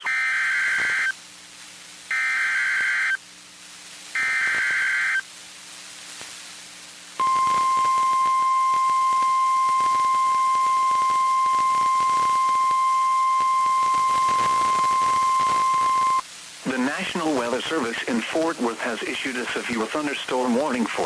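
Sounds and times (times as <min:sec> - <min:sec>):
digital header data bursts: 0:00.0 - 0:01.1, 0:04.1 - 0:05.2, 0:07.2 - 0:21.0
steady warning alarm tone: 0:00.0 - 0:01.1, 0:02.1 - 0:03.2, 0:04.2 - 0:05.2, 0:07.2 - 0:16.2.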